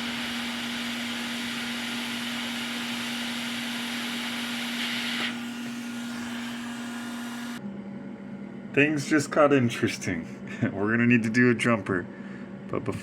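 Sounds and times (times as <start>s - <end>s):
hot-air station blowing: 0.0s - 7.6s
motor hum: 0.0s - 8.3s.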